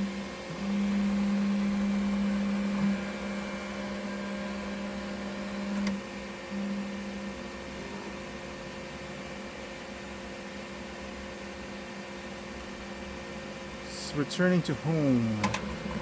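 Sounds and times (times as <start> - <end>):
printer motors humming: 0.0 - 12.7, 13.4 - 16.0
printer click: 15.4 - 15.7.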